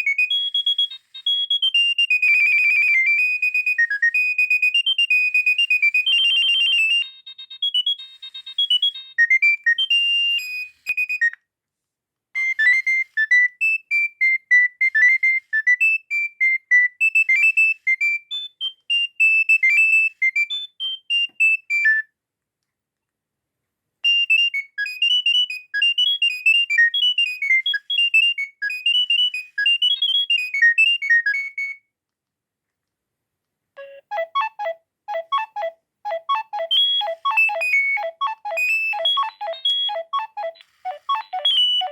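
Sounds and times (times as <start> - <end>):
mobile phone ringtones beeping: 33.8 - 41.9.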